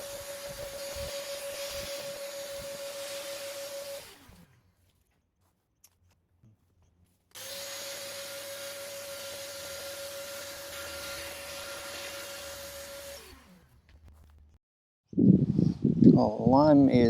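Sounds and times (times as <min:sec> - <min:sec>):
vacuum cleaner running: 0:00.0 - 0:04.4, 0:07.4 - 0:13.7.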